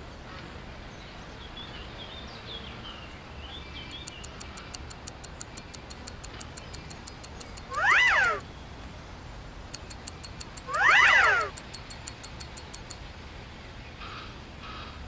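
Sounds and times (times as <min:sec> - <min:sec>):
faint birds chirping: 0:00.9 - 0:08.9, 0:09.6 - 0:13.1
rapid high ticking: 0:03.9 - 0:08.4, 0:09.7 - 0:13.0.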